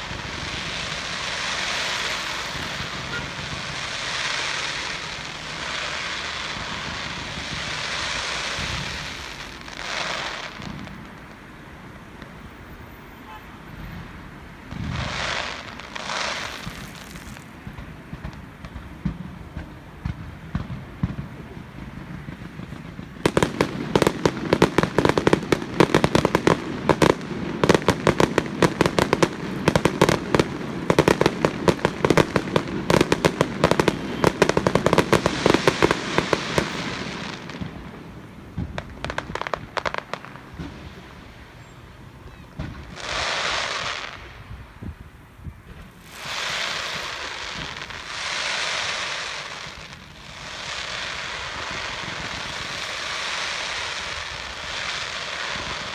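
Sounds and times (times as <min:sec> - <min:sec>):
fireworks cracking and banging: 0:00.0 - 0:12.4, 0:14.0 - 0:45.0, 0:45.6 - 0:55.9.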